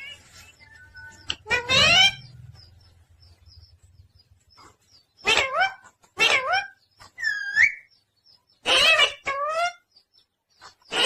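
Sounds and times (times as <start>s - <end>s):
parrot harsh calls: 1.4s - 2.3s, 5.2s - 7.8s, 8.6s - 9.8s.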